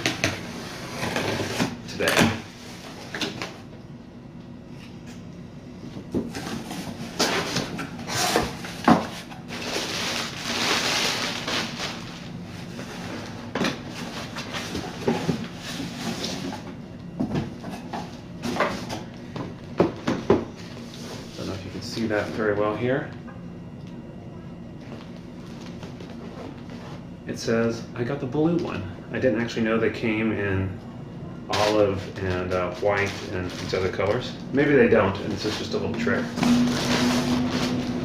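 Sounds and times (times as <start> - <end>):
packaging rustling and sliding: 6.3 - 16.7, 36.5 - 38.0.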